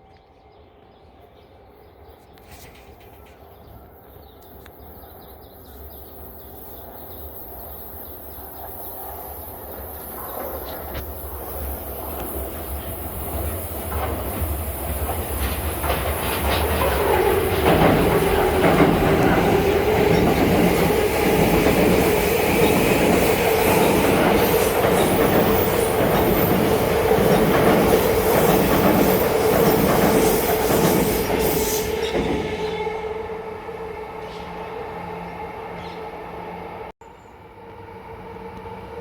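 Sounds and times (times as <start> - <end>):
electric train passing: 3.0 - 39.0
train wheels clattering over rail joints: 10.2 - 32.5.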